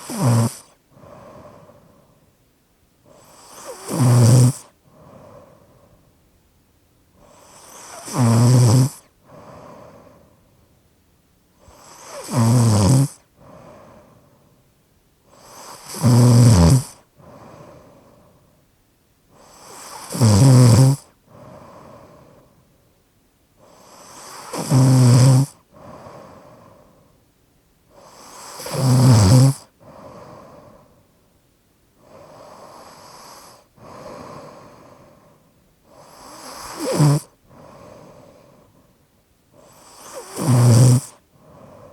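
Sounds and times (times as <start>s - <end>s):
person snoring: 0.0s - 2.1s, 3.1s - 5.9s, 7.2s - 10.3s, 11.6s - 14.2s, 15.3s - 18.3s, 19.4s - 22.4s, 23.6s - 27.0s, 28.0s - 30.9s, 32.0s - 35.3s, 35.9s - 38.8s, 39.6s - 41.9s
quiet breathing: 0.0s - 41.9s.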